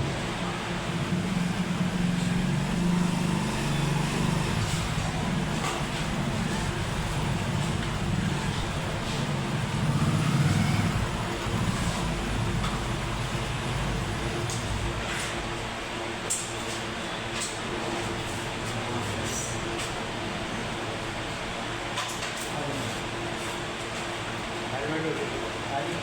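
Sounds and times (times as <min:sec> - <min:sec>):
engine humming: 0:00.0 - 0:16.0.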